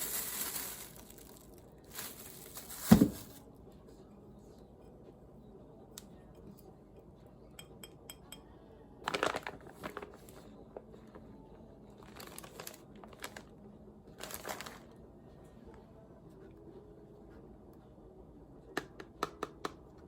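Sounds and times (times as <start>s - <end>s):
plastic packaging crinkling: 0.0s - 3.4s, 9.1s - 10.5s, 12.0s - 13.5s, 14.2s - 14.9s.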